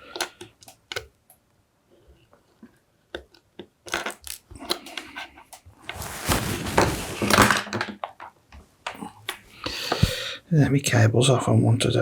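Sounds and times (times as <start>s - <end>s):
loud scraping rustling: 5.8s - 7.6s.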